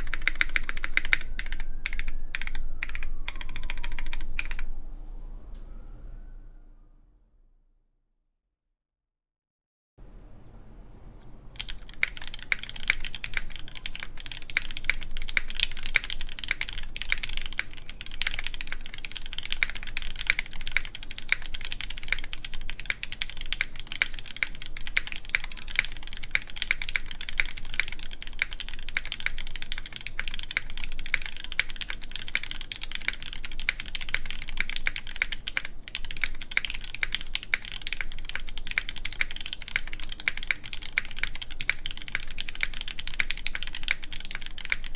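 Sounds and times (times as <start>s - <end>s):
fast typing on mechanical keyboard: 0.0s - 4.7s, 11.6s - 44.9s.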